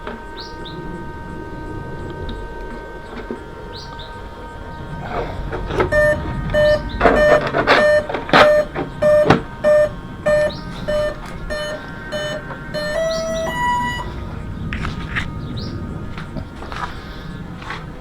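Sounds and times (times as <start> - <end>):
short electronic beeps: 5.9 - 14.1
bird chirps: 6.0 - 14.1.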